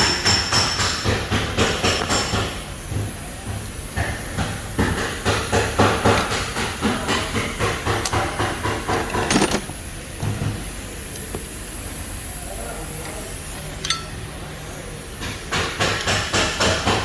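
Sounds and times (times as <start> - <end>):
metallic knocking and clattering: 7.1 - 9.8.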